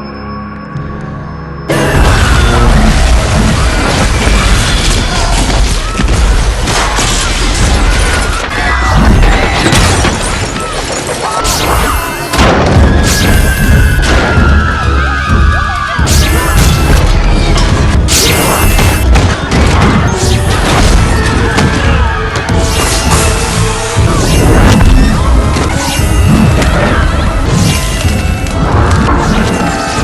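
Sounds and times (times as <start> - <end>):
dramatic music: 0.0 - 30.0
loud booms and crashing impacts: 1.7 - 10.7, 11.7 - 29.5
telekinesis sound effect: 11.0 - 30.0.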